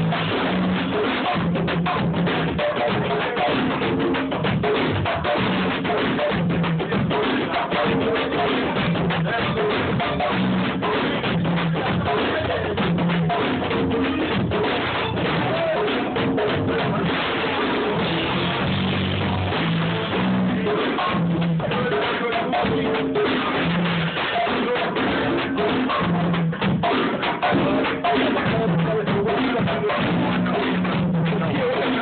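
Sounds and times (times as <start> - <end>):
repeating bass line: 8.8 - 21.7.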